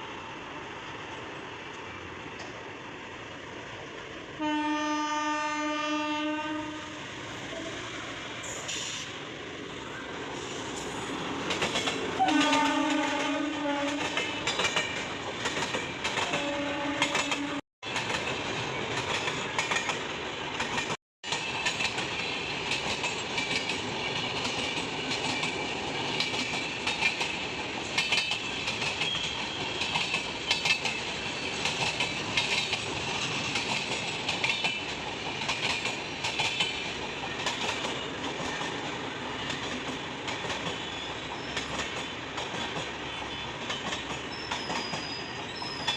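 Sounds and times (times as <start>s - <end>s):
locomotive horn blasts: 4.4s - 6.9s, 12.2s - 14.1s, 16.3s - 17.6s
train wagons rumbling: 7.3s - 45.9s
wheels clacking over rail joints: 11.1s - 45.9s.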